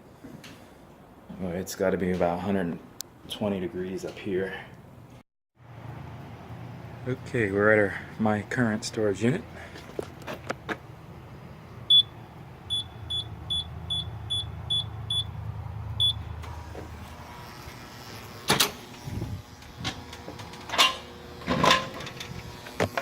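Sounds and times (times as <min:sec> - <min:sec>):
electronic keypad beeping: 0:11.9 - 0:12.1, 0:12.7 - 0:15.3, 0:16.0 - 0:16.2.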